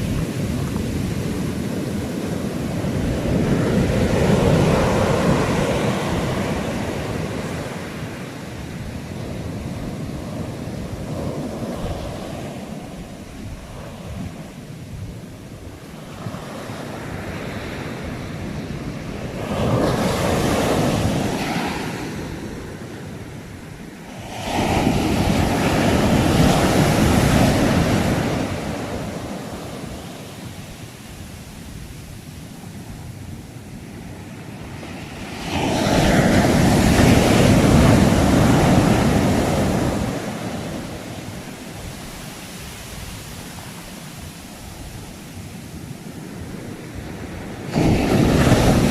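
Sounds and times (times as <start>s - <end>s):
steady surf wash: 0.0s - 48.9s
waves crashing on shore: 0.0s - 48.9s.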